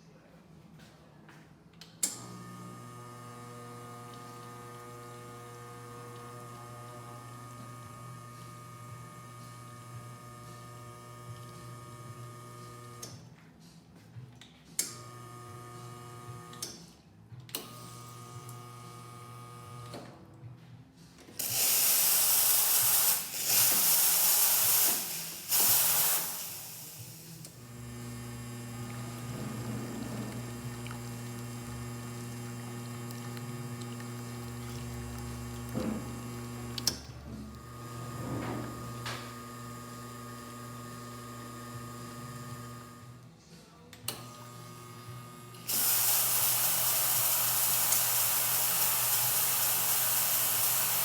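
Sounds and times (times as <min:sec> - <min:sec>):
espresso machine pump humming: 0:02.3 - 0:13.0, 0:21.4 - 0:43.1, 0:44.4 - 0:51.0
steam wand hissing: 0:21.4 - 0:32.9, 0:45.7 - 0:51.0.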